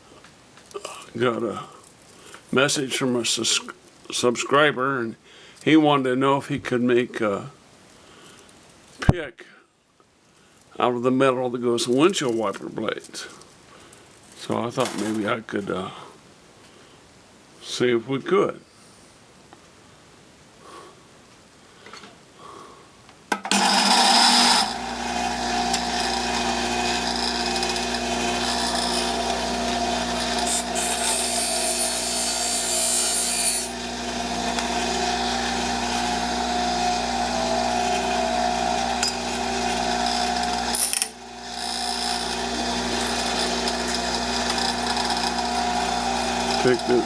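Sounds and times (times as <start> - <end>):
electric grinder grinding metal: 23.5 - 47.0.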